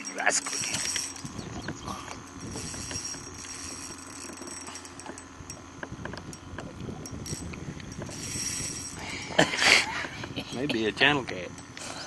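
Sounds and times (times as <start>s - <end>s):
boat motor running: 0.0s - 12.0s
faint high whine: 0.0s - 12.0s.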